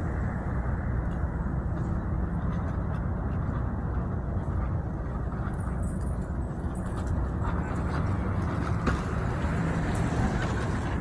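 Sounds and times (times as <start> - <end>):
low rumble of vehicle noise: 0.0 - 11.0.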